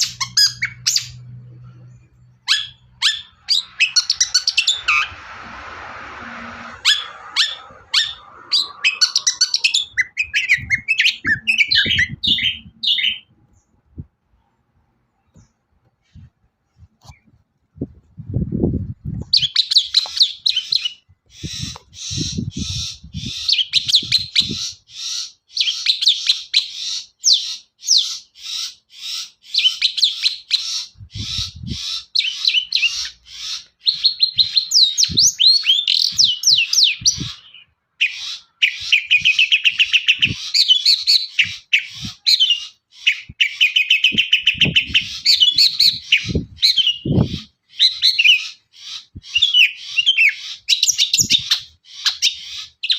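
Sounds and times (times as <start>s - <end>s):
shrike chattering song: 2.3s - 13.3s.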